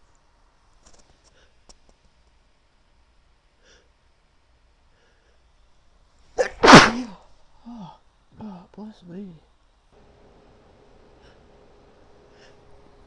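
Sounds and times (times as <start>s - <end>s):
woman breathing faintly: 4.8s - 5.6s, 11.1s - 12.8s.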